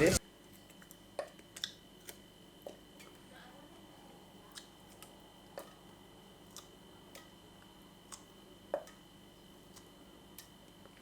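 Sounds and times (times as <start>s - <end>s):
faint clock-like ticking: 6.5s - 10.8s.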